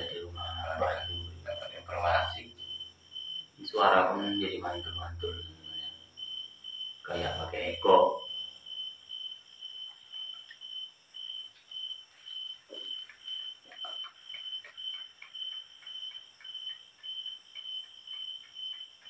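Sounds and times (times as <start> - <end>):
cricket chirping: 0.0 - 19.0
faint insect calls: 0.0 - 19.0.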